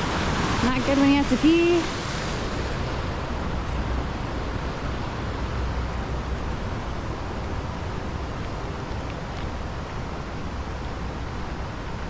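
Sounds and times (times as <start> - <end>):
fast-flowing stream rushing: 0.0 - 6.5.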